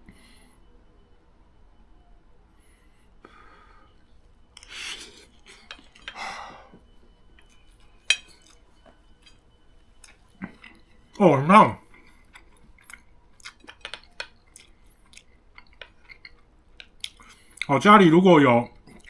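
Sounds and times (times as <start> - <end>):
spoon scraping a plate: 4.6 - 6.2, 7.4 - 9.4
spoon clinking on plate: 5.4 - 6.2, 7.4 - 9.4.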